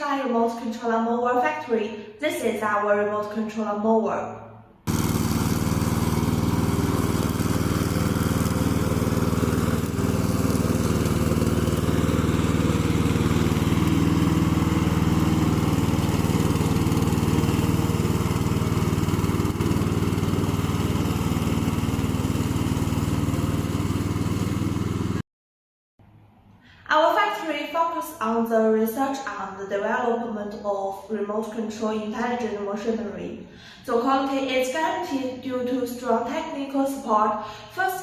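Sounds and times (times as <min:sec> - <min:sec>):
lawn mower engine running: 0:04.9 - 0:25.2.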